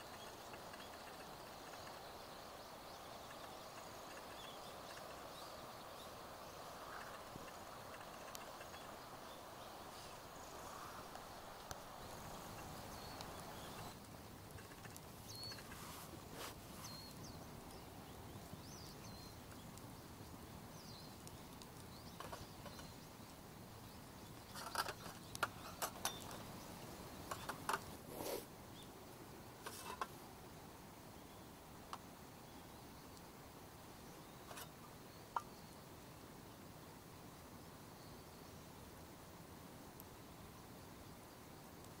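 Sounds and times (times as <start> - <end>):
faint high chirps: 0.0 - 14.0
soft hiss: 0.0 - 42.0
sharp clicks and snaps: 11.1 - 15.8.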